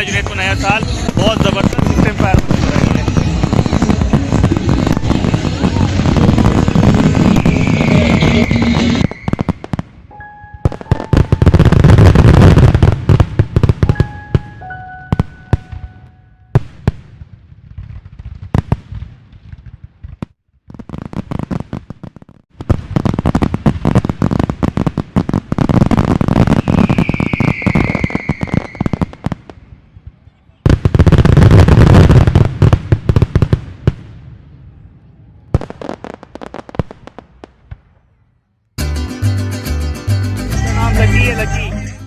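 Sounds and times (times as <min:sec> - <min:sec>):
firework whistling: 0:00.0 - 0:12.7, 0:26.2 - 0:29.3
fireworks crackling and banging: 0:00.0 - 0:34.9, 0:35.5 - 0:38.2.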